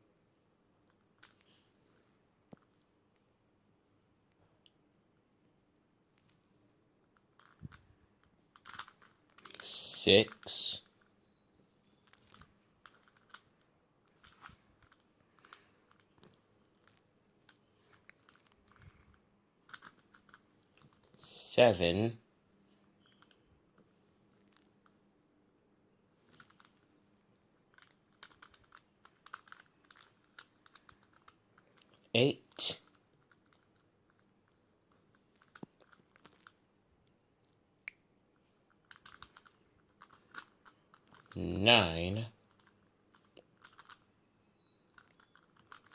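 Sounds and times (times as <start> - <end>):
puzzle cube clicking: 8.5 - 11.1, 12.0 - 19.0, 19.6 - 21.2, 26.3 - 26.8, 27.7 - 34.2, 38.8 - 41.6, 42.5 - 44.3, 44.9 - 45.9.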